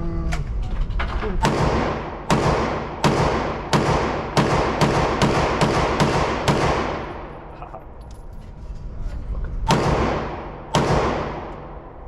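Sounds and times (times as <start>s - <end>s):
gunshots echoing indoors: 1.3s - 7.6s, 9.6s - 12.0s.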